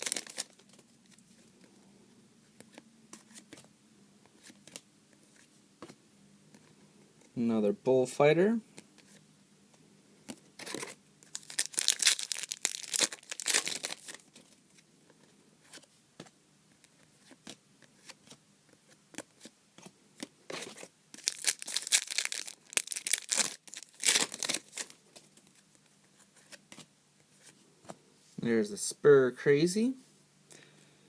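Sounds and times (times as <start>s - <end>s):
foil wrappers tearing and crinkling: 0.0s - 0.6s, 10.6s - 14.2s, 21.2s - 25.0s.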